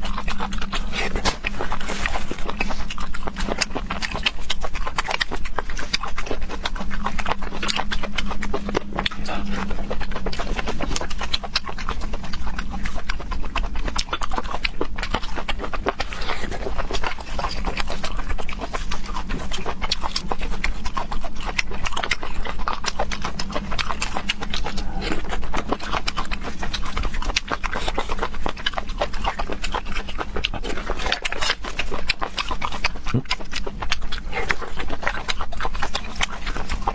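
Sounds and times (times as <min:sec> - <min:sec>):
mouth clicks: 0:00.0 - 0:36.9
wet smacking and chewing: 0:00.0 - 0:36.9.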